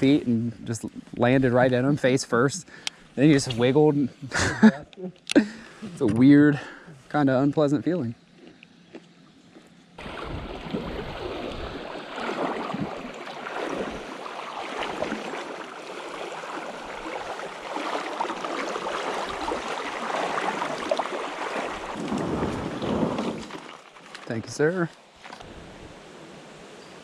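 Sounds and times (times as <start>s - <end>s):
creek water rushing and splashing: 10.0s - 26.8s.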